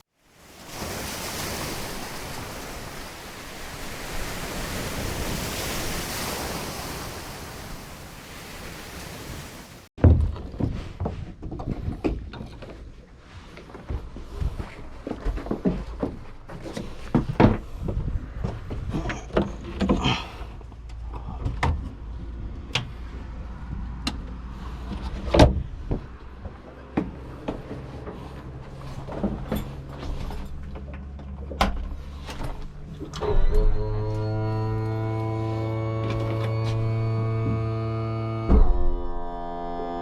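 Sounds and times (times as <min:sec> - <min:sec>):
irregular knocks and low thumps: 0:10.0 - 0:13.0, 0:13.8 - 0:20.4, 0:38.4 - 0:39.2.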